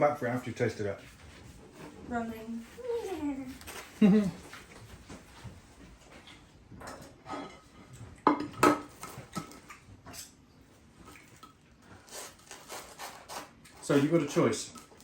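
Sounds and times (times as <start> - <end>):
plates and cutlery clinking: 6.8 - 9.6.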